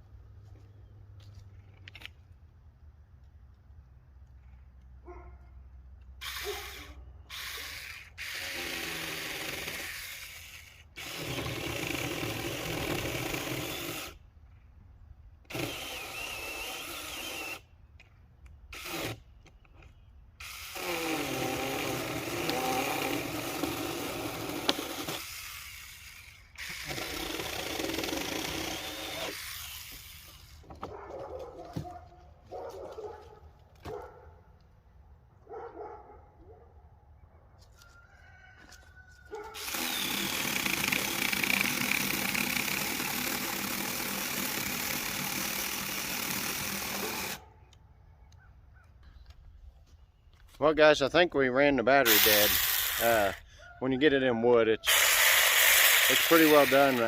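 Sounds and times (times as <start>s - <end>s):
handheld chainsaw cutting wood: 6.2s - 14.2s, 15.4s - 17.7s, 18.7s - 19.3s, 20.4s - 31.0s, 39.3s - 47.5s, 51.9s - 53.5s, 54.8s - 57.0s.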